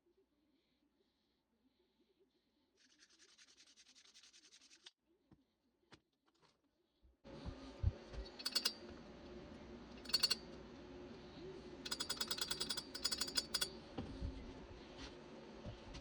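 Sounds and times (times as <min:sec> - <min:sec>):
ratchet clicking: 0:08.4 - 0:08.8, 0:10.0 - 0:10.5, 0:11.8 - 0:13.7.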